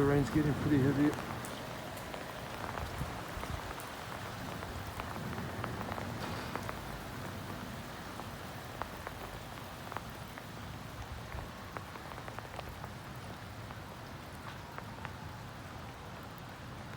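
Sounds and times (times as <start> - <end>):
heavy rain: 0.0 - 16.9
raindrops ticking on a surface: 0.0 - 16.9.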